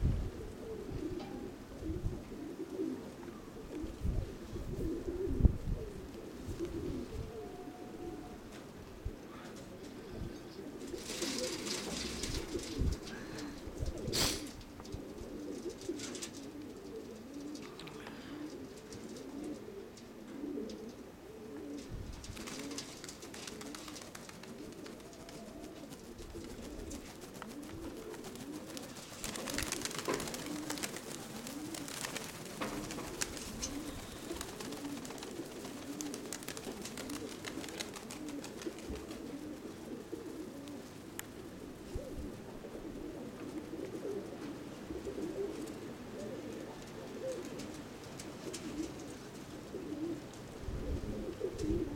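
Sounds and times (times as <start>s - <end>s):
pigeons cooing: 0.0s - 51.9s
rustling noise: 10.8s - 17.8s, 21.7s - 45.8s.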